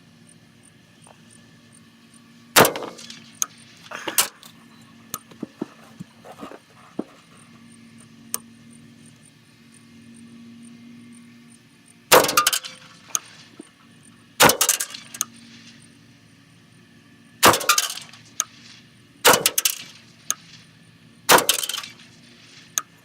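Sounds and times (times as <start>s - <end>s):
rifle shots echoing: 2.6s - 3.3s, 12.1s - 12.7s, 14.4s - 15.0s, 17.4s - 18.0s, 19.2s - 20.0s, 21.3s - 22.0s.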